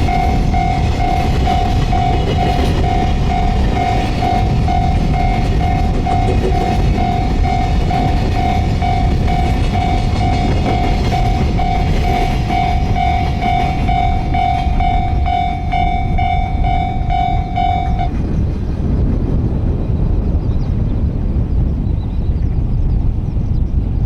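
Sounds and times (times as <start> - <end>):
higher warning bell pattern: 0.0 - 18.4
level-crossing warning bell dinging: 0.0 - 18.6
train rumbling past: 0.0 - 24.0.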